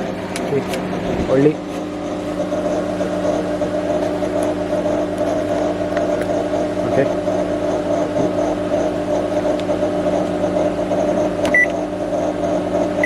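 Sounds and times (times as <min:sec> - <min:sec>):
microwave oven humming: 0:00.0 - 0:13.0
keypad beep: 0:11.5 - 0:11.8.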